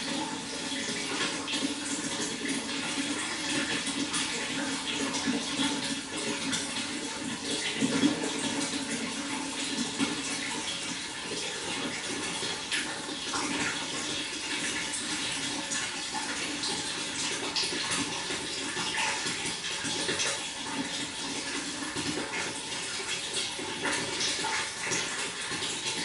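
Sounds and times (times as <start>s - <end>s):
water flowing and splashing: 0.0s - 26.0s.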